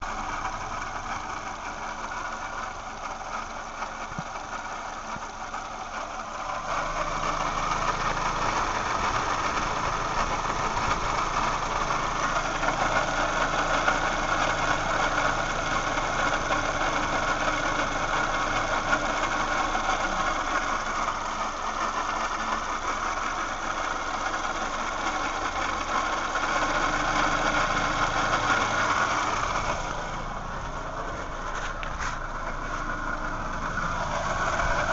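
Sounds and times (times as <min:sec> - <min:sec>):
car engine idling: 0:00.0 - 0:34.9
odd noise from engine pulley: 0:30.6 - 0:33.0.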